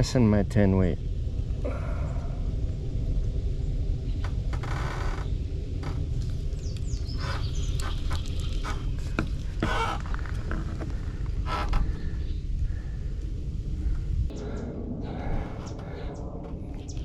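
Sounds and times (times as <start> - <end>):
wind rumble on microphone: 0.0 - 17.0.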